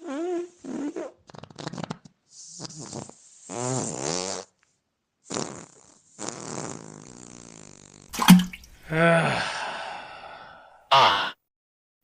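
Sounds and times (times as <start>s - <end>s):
fart sounds: 0.0s - 4.5s, 5.2s - 8.6s.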